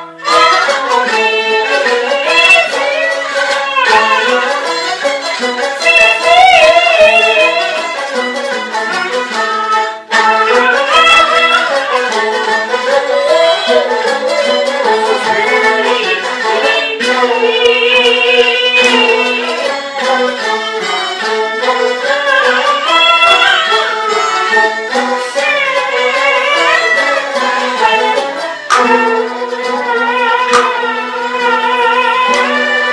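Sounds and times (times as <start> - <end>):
opera music with bowed fiddle: 0.0 - 32.9.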